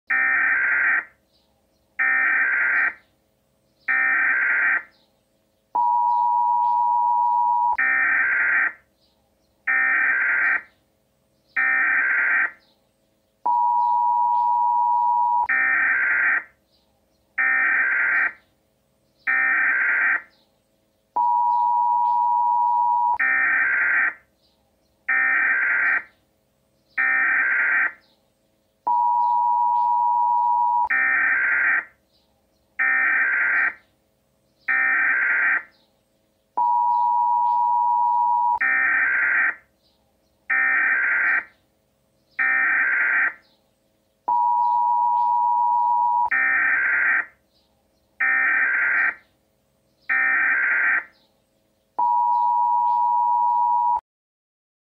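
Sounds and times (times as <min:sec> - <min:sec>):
two-tone attention signal: 0:13.5 - 0:15.7, 0:28.9 - 0:31.1, 0:36.6 - 0:38.8, 0:44.3 - 0:46.5, 0:52.0 - 0:54.0.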